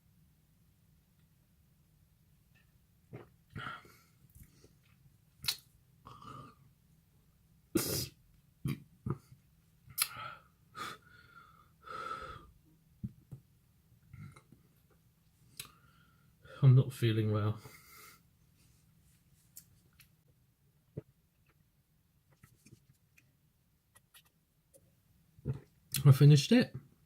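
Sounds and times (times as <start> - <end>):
person breathing noisily: 10.2 - 12.5.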